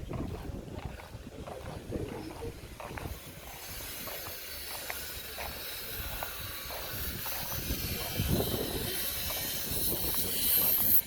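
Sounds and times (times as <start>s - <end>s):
steady hiss: 2.6s - 11.0s.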